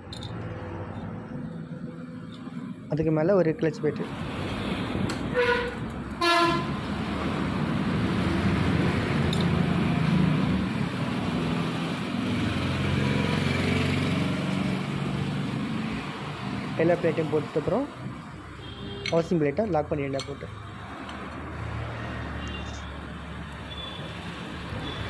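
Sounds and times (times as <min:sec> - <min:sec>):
horn toots: 0:05.3 - 0:06.8.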